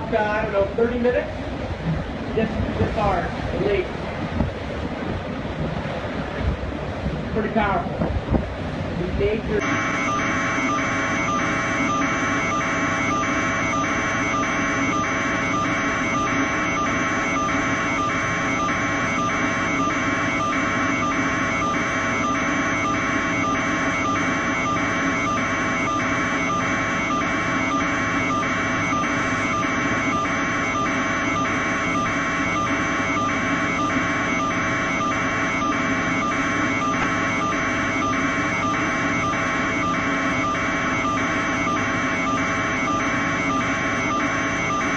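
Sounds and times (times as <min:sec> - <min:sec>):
roaring wind: 0:00.4 - 0:09.6
building alarm beeping: 0:09.6 - 0:44.9.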